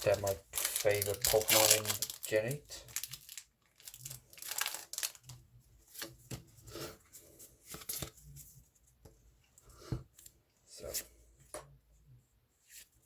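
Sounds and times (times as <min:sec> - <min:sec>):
card pack rustling and crinkling: 0:00.0 - 0:06.1.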